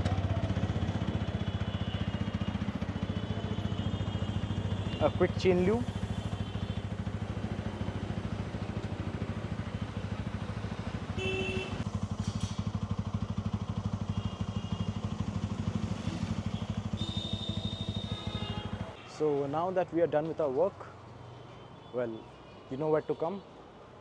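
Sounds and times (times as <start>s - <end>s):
motorcycle engine idling: 0.0s - 19.0s.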